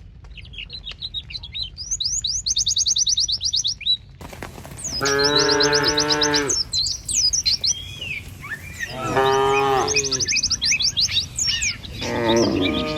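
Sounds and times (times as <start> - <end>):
small birds chirping: 0.0 - 12.9
cattle mooing: 5.0 - 6.6, 8.9 - 10.5, 12.0 - 12.9.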